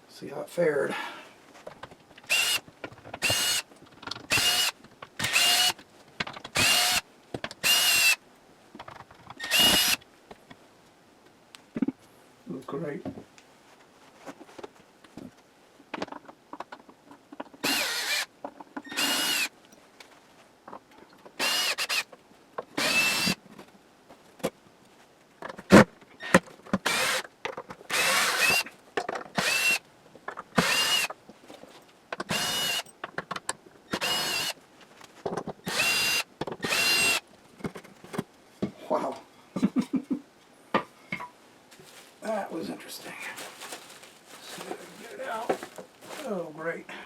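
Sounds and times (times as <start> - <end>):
power drill whirring: 2.3 - 2.6, 3.2 - 3.7, 4.3 - 5.8, 6.6 - 7.0, 7.6 - 8.2, 9.4 - 10.0, 17.6 - 18.3, 18.9 - 19.5, 21.4 - 22.1, 22.8 - 23.4, 26.2 - 27.3, 27.9 - 28.7, 29.3 - 29.8, 30.6 - 31.1, 32.3 - 32.8, 33.9 - 34.6, 35.6 - 37.2.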